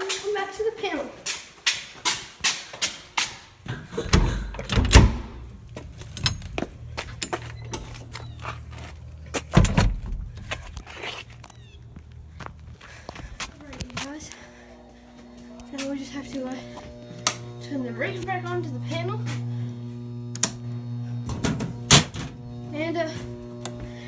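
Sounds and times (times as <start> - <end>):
footsteps walking: 0.0 - 4.6, 5.2 - 24.0
low steady hum: 3.6 - 24.0
door thudding: 3.7 - 6.8, 9.5 - 10.4.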